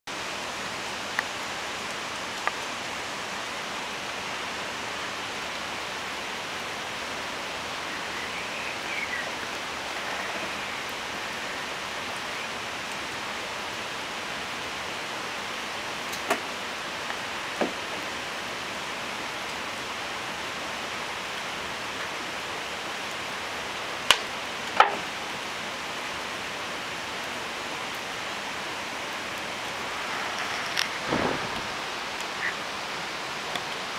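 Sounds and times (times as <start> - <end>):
campfire hissing in rain: 0.1 - 33.9
burning wood popping: 29.7 - 32.6.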